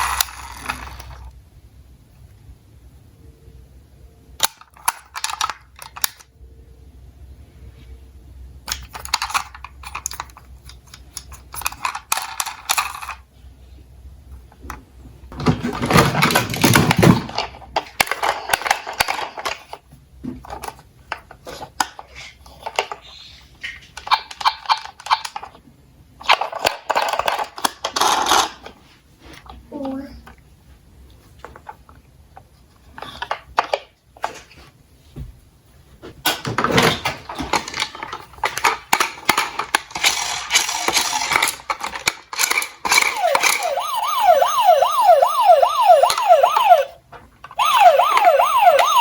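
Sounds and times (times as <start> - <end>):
toy cars rattling on a track: 0.0 - 1.3, 8.7 - 13.2, 15.5 - 19.8, 26.2 - 28.7, 36.8 - 43.8.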